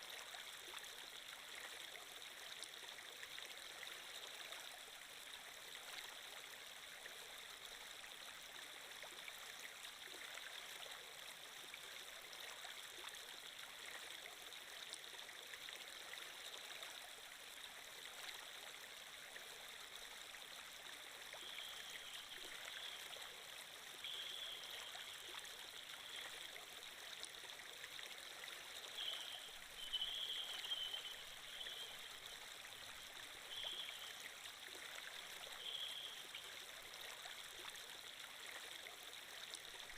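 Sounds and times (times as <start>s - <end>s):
stream flowing: 0.0s - 39.9s.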